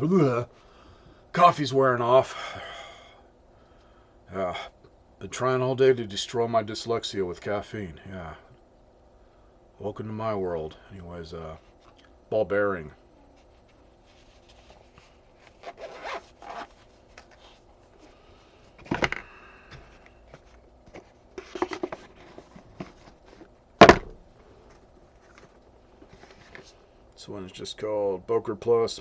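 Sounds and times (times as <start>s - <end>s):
rustling and rubbing of pouch: 13.3s - 18.9s, 19.9s - 23.6s.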